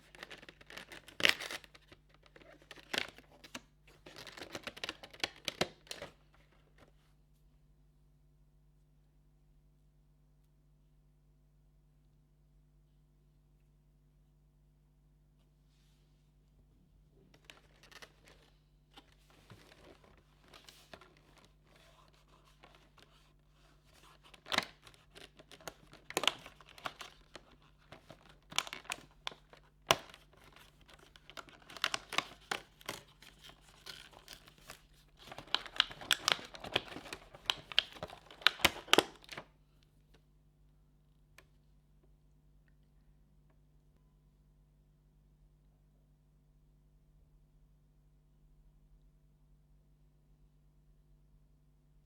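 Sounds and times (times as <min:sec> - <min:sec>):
paper and cardboard crinkling: 0:00.0 - 0:06.9, 0:17.3 - 0:39.5.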